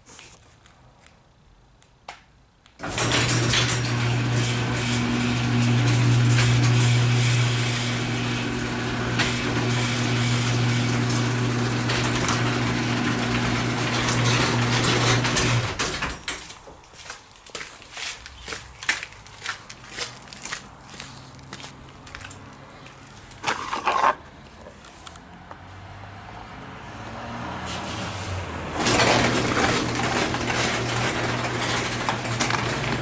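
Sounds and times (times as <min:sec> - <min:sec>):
garage door opener motor hum: 0:02.8 - 0:16.4, 0:28.7 - 0:33.0
garage door moving: 0:02.8 - 0:16.7, 0:27.7 - 0:33.0.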